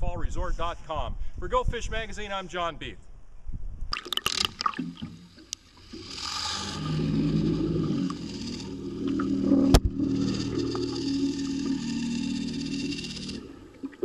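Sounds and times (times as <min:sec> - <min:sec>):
boat engine humming: 0:04.6 - 0:14.0.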